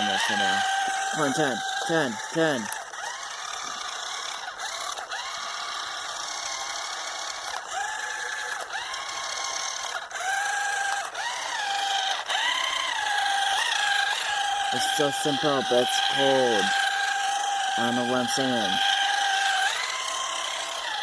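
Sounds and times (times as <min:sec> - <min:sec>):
toy car electric motor whining: 0:00.0 - 0:21.0.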